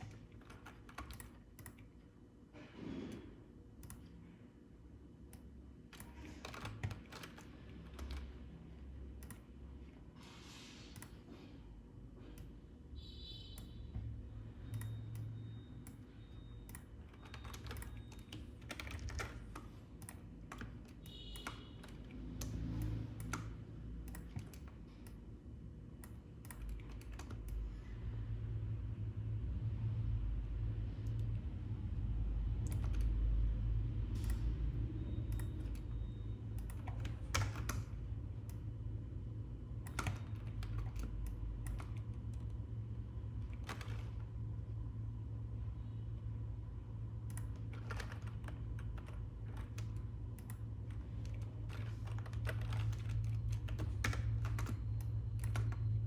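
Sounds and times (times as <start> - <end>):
keyboard and mouse clicks: 0.0 - 2.0, 3.8 - 4.2, 5.3 - 8.4, 9.1 - 9.6, 14.7 - 25.2, 26.0 - 27.7, 32.6 - 33.2, 34.2 - 34.5, 35.2 - 38.7, 39.7 - 42.6, 43.4 - 44.3, 47.2 - 56.0.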